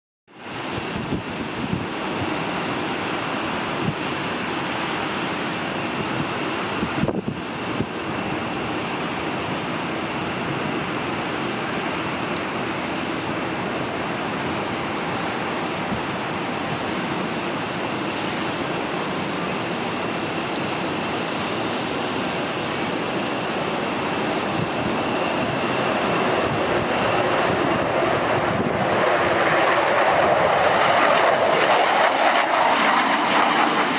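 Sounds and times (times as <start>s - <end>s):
jet engines rushing with whine: 0.3s - 33.9s.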